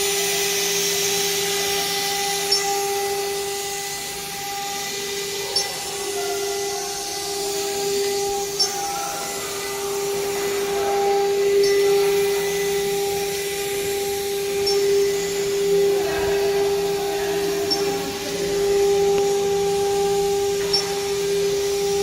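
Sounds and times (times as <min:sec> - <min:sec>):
rushing cutting noise: 0:00.0 - 0:22.0
spindle high-pitched whine: 0:00.0 - 0:22.0.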